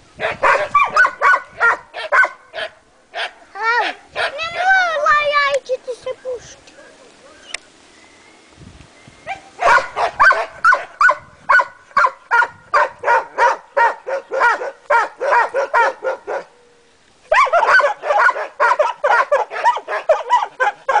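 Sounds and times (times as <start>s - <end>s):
dog barking: 0.2s - 3.4s, 4.2s - 4.4s, 9.3s - 16.5s, 17.3s - 21.0s.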